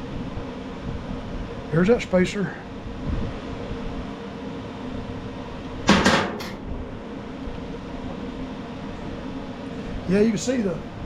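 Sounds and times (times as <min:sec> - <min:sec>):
steady fan-like hum: 0:00.0 - 0:11.0.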